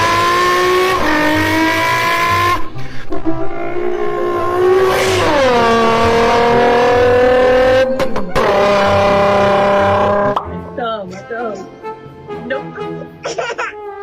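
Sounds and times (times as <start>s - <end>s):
high-pitched engine-like drone: 3.2s - 10.3s.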